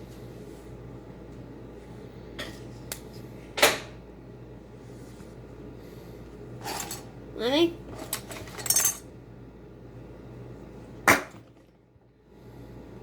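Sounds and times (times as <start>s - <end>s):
steady low hum: 0.0s - 13.0s
loud sharp pop: 11.1s - 11.4s.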